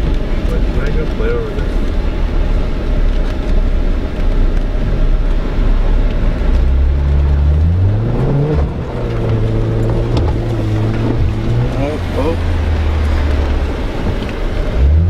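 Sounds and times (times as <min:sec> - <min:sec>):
engine low rumble: 0:00.0 - 0:15.0.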